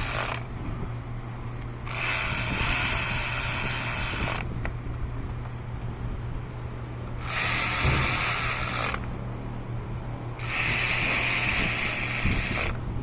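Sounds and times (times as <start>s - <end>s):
electric ratchet running: 0.0s - 0.5s, 1.8s - 4.5s, 7.2s - 9.1s, 10.4s - 12.8s.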